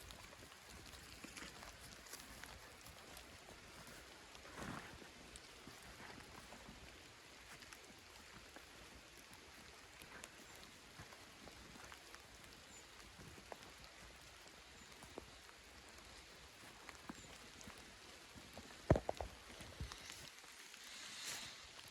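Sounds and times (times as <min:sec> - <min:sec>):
soft steady hiss: 0:12.0 - 0:21.9.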